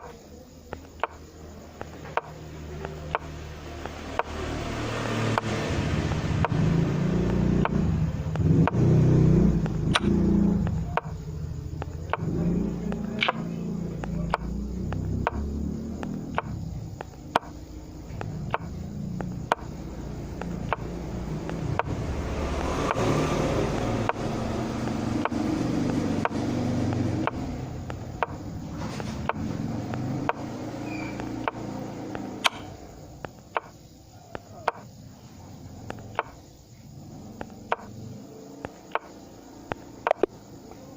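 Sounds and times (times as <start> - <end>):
low steady rumble: 5.8 - 22.9.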